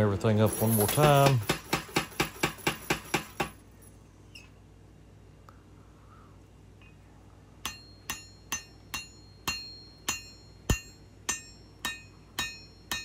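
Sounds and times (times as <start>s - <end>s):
hammer striking metal on anvil: 0.9s - 3.6s, 7.6s - 13.0s.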